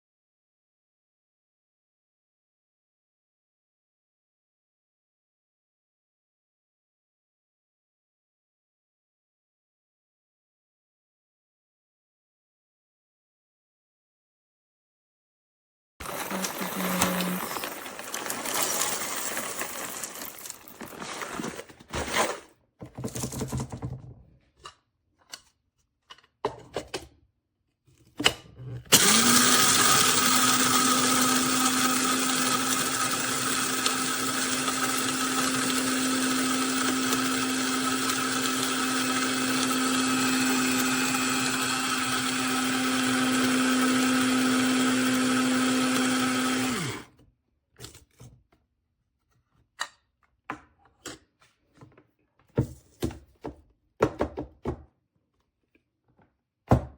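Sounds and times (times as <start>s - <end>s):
coffee grinder motor humming: 16.0s - 21.2s, 28.9s - 47.1s.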